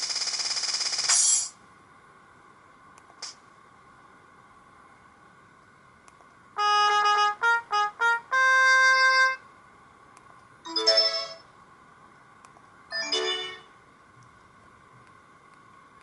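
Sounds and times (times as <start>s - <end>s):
synthesized ringtone melody: 10.7s - 11.4s, 12.9s - 13.7s.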